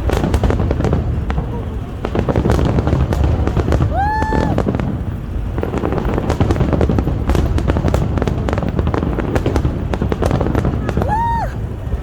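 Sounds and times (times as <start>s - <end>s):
fireworks crackling and popping: 0.0s - 12.0s
rising firework whoop: 0.0s - 12.0s.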